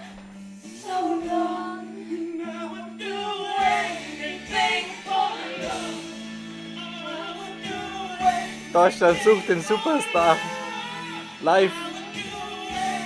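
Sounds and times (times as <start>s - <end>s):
backing track of held chords: 0.0s - 13.0s
person singing: 0.7s - 13.0s.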